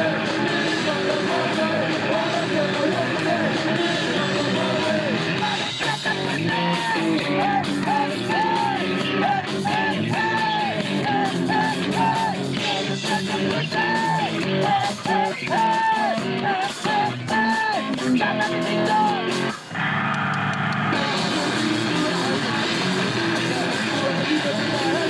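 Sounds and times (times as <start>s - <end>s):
drums: 0.0s - 25.0s
electric guitar: 0.0s - 25.0s
person yelling vocals: 4.5s - 19.4s.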